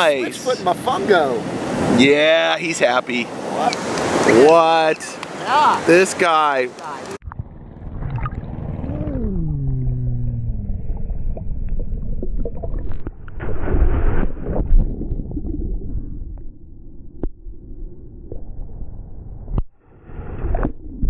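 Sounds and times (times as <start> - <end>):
ocean surf sloshing: 0.0 - 7.2
rush of water: 0.0 - 7.2.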